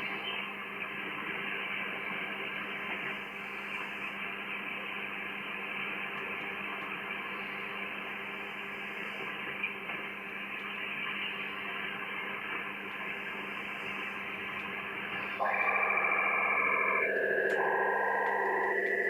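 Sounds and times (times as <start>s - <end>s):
faint steady tones: 0.0s - 19.0s
radio band noise and hiss: 0.0s - 19.0s
low steady hum: 10.6s - 19.0s.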